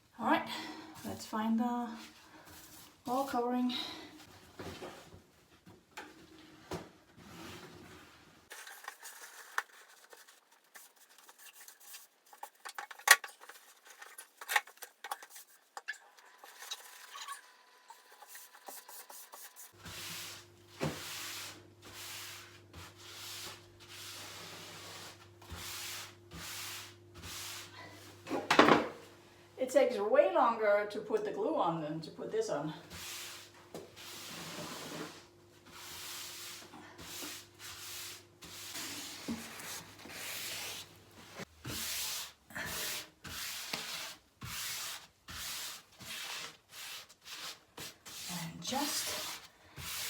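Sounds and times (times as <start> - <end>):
rubbing strokes on wall: 17.9 - 28.1, 32.9 - 50.0.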